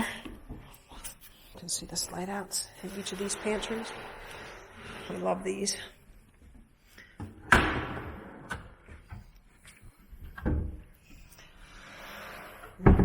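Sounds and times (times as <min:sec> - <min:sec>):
shelf sliding rumble: 0:02.8 - 0:05.4.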